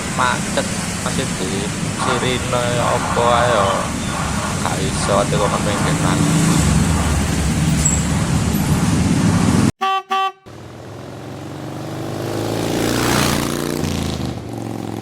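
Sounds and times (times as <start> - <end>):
engine revving: 0.0 - 9.7, 10.5 - 15.0
road traffic noise: 0.0 - 15.0
vehicle horn toots: 9.8 - 10.6.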